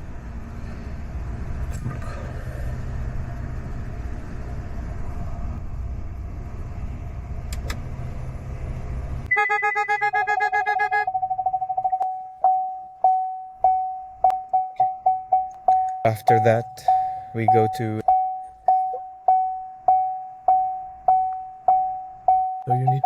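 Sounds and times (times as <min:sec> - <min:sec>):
car rumbling: 0:00.0 - 0:23.0
fast-pulsing electronic tones: 0:09.3 - 0:12.0.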